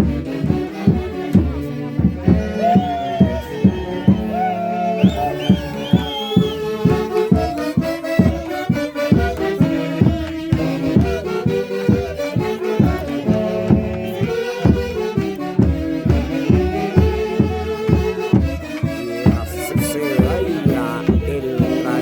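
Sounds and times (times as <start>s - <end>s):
folk orchestra playing lively tune: 0.0s - 22.0s.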